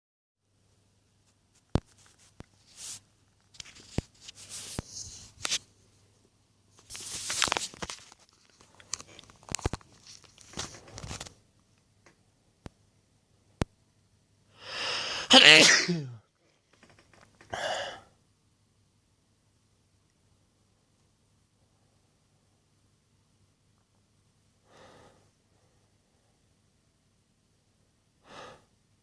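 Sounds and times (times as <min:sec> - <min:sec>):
sharp clicks and rustles: 0:06.8 - 0:12.2, 0:16.4 - 0:17.5
man's breathy inhalations: 0:14.5 - 0:15.3, 0:17.5 - 0:18.1, 0:24.6 - 0:26.0, 0:28.2 - 0:28.8
man sneezing: 0:14.9 - 0:16.2.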